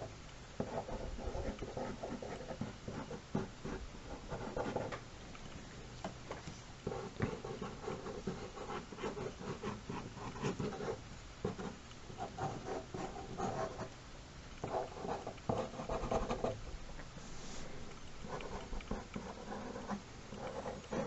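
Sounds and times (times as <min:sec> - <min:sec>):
pencil strokes scratching paper: 0:06.4 - 0:13.9, 0:17.2 - 0:21.0.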